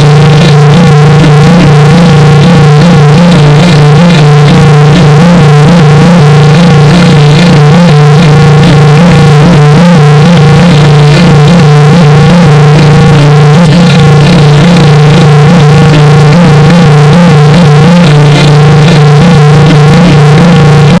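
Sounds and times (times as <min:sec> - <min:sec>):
low synthesizer drone: 0:00.0 - 0:21.0.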